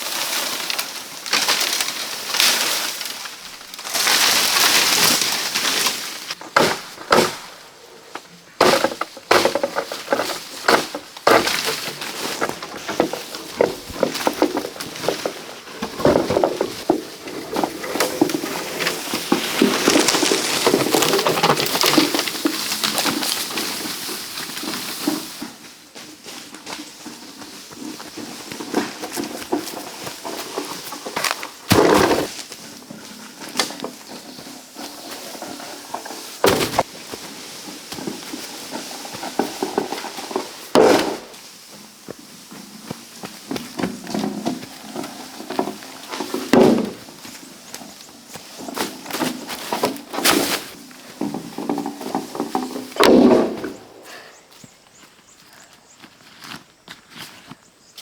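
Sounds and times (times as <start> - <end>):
dry wood cracking and snapping: 0.0 - 7.4, 8.6 - 24.7, 28.0 - 32.8, 33.4 - 41.3, 43.5 - 54.2
crackling rustle: 0.0 - 58.0.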